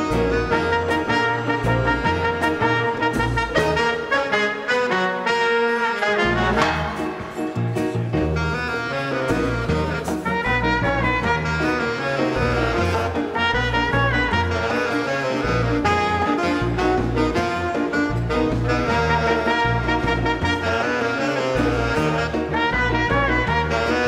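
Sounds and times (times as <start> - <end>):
dance orchestra playing: 0.0 - 24.0.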